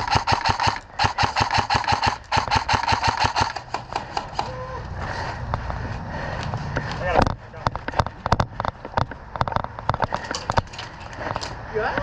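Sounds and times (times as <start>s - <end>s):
airsoft rifle full-auto bursts: 0.0s - 4.2s
scattered airsoft shots: 0.0s - 4.6s.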